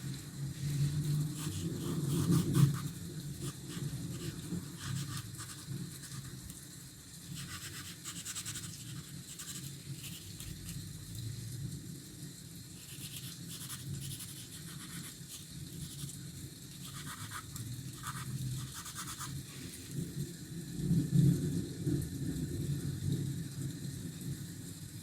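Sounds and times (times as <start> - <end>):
pencil scratching on paper: 1.4 - 6.3, 7.4 - 10.5, 12.8 - 16.1, 16.8 - 19.4.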